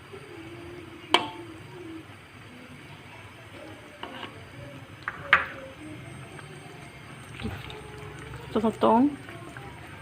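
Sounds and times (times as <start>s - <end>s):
prawns sizzling in a pan: 0.0s - 10.0s.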